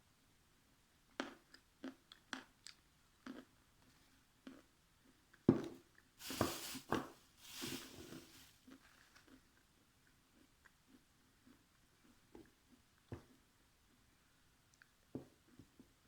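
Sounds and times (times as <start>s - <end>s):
crunching and chewing dried clay: 1.1s - 6.1s, 8.5s - 13.5s.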